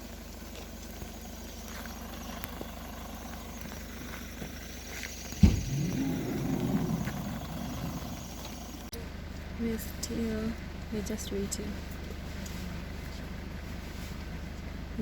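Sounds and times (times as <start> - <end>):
car engine running: 0.0 - 15.0
sharp knock: 5.4 - 5.7.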